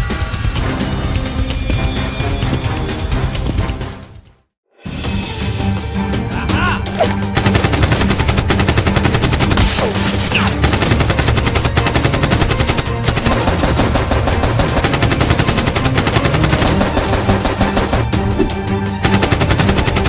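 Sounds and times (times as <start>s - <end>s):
background music: 0.0s - 20.0s
machine-gun fire: 7.4s - 18.1s, 19.0s - 20.0s.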